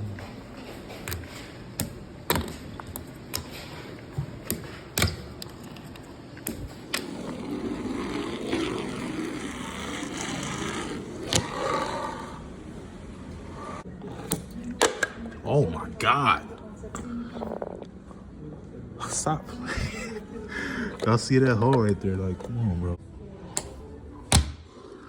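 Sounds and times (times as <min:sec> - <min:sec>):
tiny wheels rolling rumble: 0:06.7 - 0:12.4.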